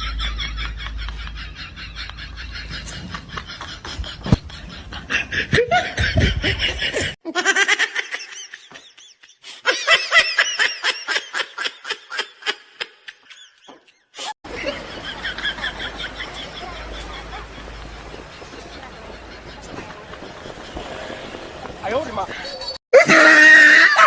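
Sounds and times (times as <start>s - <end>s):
person laughing in bursts: 0.0s - 15.8s.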